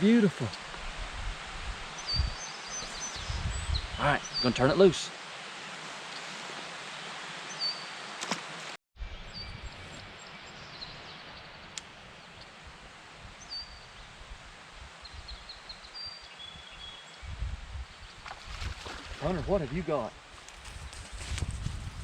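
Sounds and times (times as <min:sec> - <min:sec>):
background hiss: 0:00.0 - 0:08.7.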